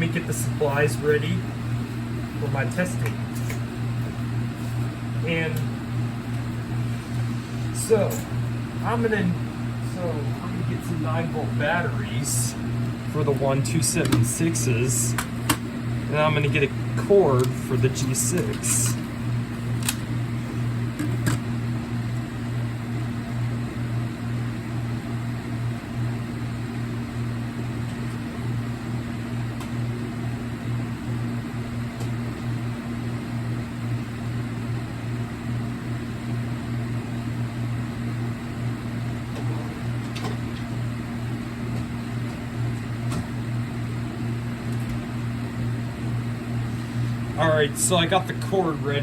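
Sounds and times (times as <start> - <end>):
low electrical hum: 0.0 - 49.0.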